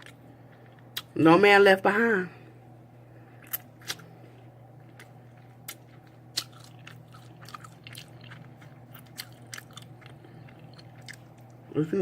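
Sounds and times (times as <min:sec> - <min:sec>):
low hum: 0:00.0 - 0:12.0
chewing and sucking meat: 0:04.8 - 0:11.6.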